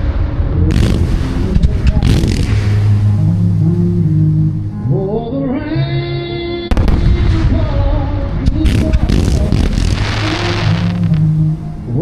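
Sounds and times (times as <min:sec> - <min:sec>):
fireworks bursting with crackle: 0:00.0 - 0:03.1, 0:06.7 - 0:11.4
music with low sustained notes: 0:00.0 - 0:12.0.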